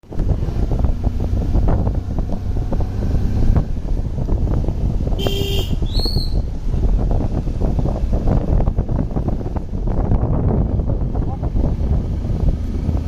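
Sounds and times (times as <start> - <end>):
vehicle rumble: 0.0 - 13.0
wind buffeting microphone: 0.0 - 13.0
horn toot: 5.2 - 6.2.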